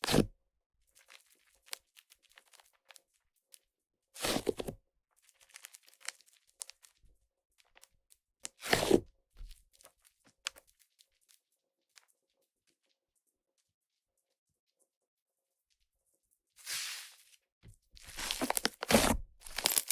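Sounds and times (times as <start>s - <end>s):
slime squishing by hand: 18.0s - 19.9s
air pockets crackling: 18.1s - 19.9s.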